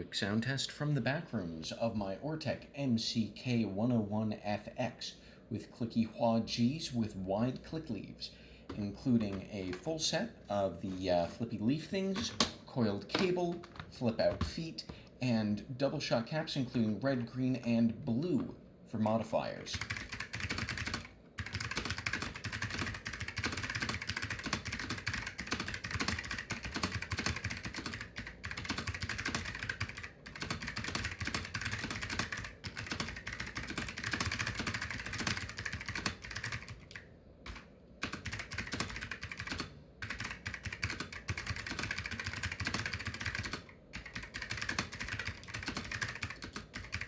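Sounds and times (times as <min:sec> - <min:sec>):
fast clicky keyboard typing: 0:19.7 - 0:47.0.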